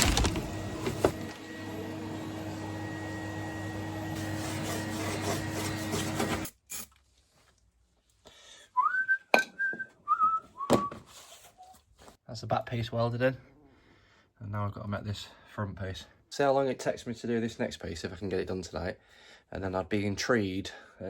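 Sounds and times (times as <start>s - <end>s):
machine humming: 0.0s - 4.2s
person whistling: 8.8s - 11.7s.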